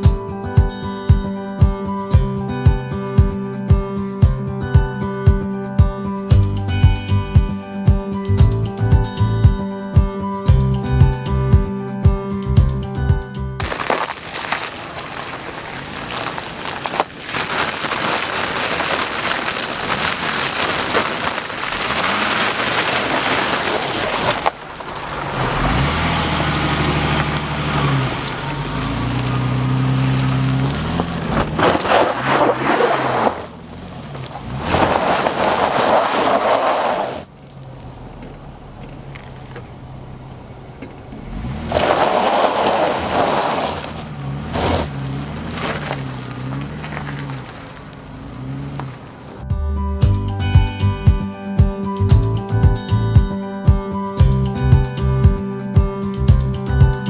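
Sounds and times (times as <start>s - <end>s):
water and mud splashing: 13.6s - 37.8s, 41.7s - 48.2s
engine revving: 25.1s - 36.9s, 37.5s - 50.3s.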